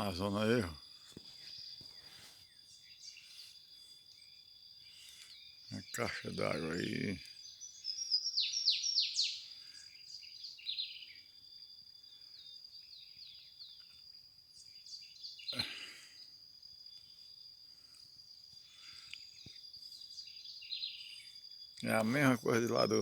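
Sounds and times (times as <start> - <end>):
birds chirping: 0.0 - 11.4, 12.1 - 16.4, 17.0 - 23.0
high-pitched insect drone: 5.2 - 13.5, 16.5 - 23.0.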